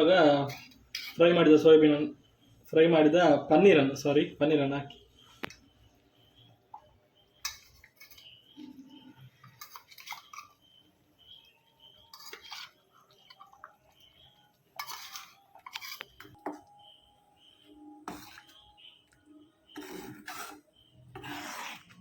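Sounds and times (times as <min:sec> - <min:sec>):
spoon scraping and clinking on dish: 0:00.3 - 0:01.4, 0:07.4 - 0:16.6, 0:18.0 - 0:18.7, 0:19.7 - 0:22.0.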